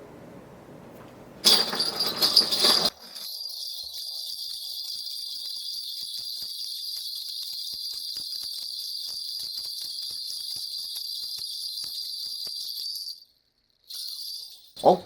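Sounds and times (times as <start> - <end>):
small bells jingling: 1.4 - 15.0.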